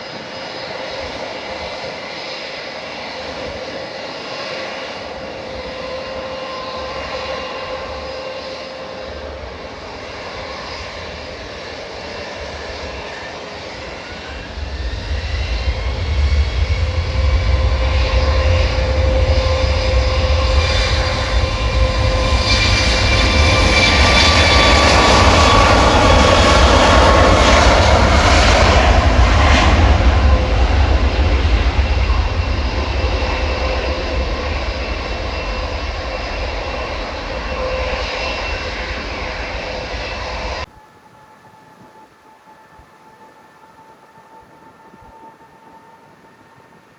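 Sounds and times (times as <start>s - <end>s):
jet airliner engines roaring: 0.0s - 46.9s.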